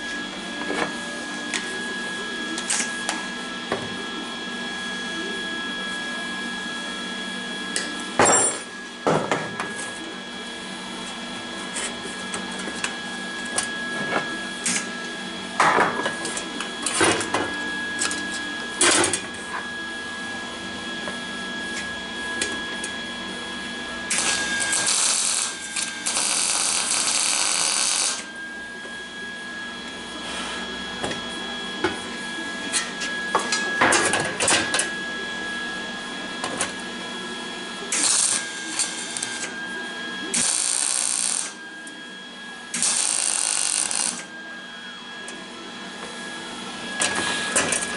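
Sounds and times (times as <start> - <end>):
electrical hum: 0.0 - 47.9
crackling welding arc: 24.1 - 28.2, 37.9 - 39.5, 40.3 - 41.6, 42.8 - 44.3.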